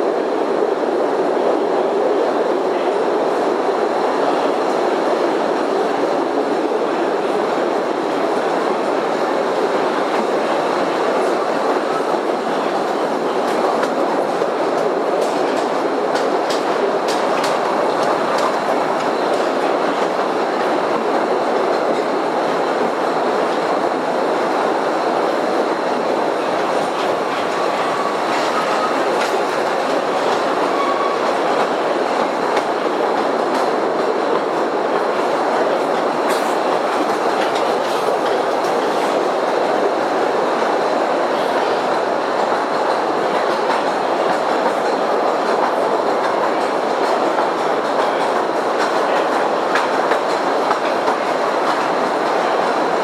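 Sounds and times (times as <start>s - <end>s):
small train rumbling on rails: 0.0s - 53.0s.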